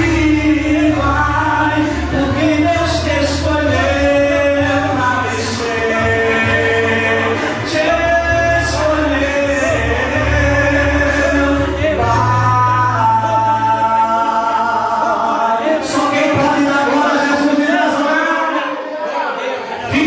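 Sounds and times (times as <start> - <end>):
low sustained bass: 0.0 - 15.2
gospel singing: 0.0 - 20.0.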